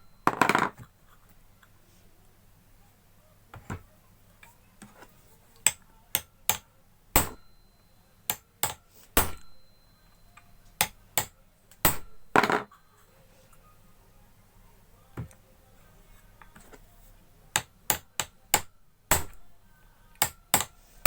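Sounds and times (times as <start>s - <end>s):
hammer striking steel punch: 7.2s - 7.6s, 8.3s - 9.7s, 10.8s - 12.3s, 17.6s - 19.4s, 20.2s - 20.8s.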